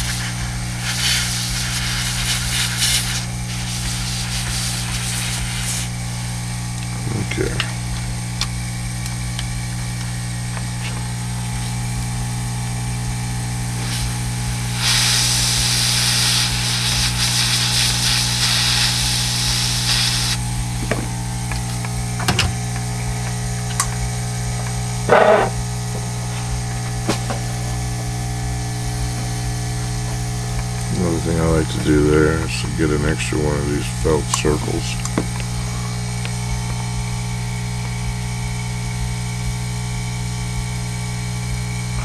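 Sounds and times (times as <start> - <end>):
heat gun blowing hiss: 0.0 - 6.5, 13.0 - 20.8
steady electrical hum: 0.0 - 42.0.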